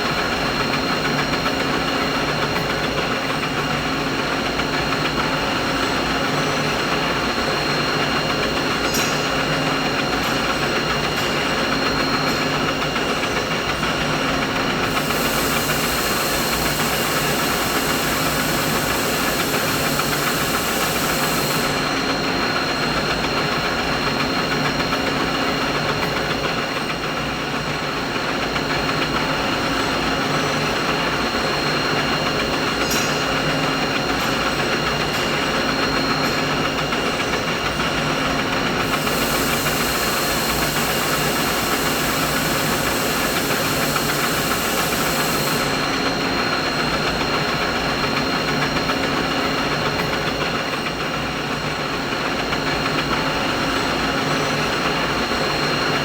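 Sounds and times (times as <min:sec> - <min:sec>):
mechanical drone with high whine: 0:04.4 - 0:26.2, 0:28.6 - 0:51.1.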